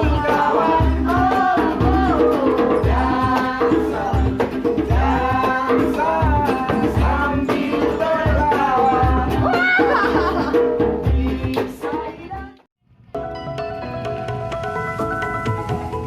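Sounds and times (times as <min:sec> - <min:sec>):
person singing: 0:00.0 - 0:12.7
bass: 0:00.0 - 0:16.0.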